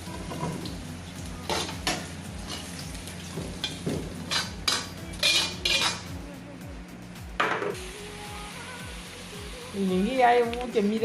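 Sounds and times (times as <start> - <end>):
food sizzling: 0.0 - 6.2, 7.7 - 11.0
metal spatula scraping a wok: 3.7 - 6.1.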